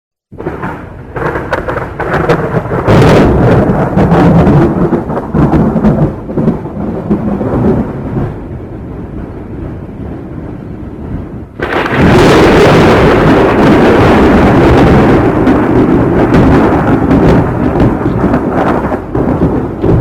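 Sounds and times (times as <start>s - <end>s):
thunder crackling: 0.3s - 20.0s
thunder rolling rumble: 0.3s - 20.0s.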